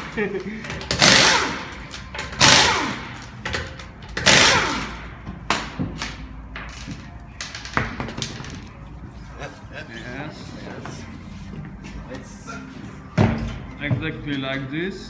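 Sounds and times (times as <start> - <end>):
pneumatic impact wrench bursts: 0.8 - 5.1.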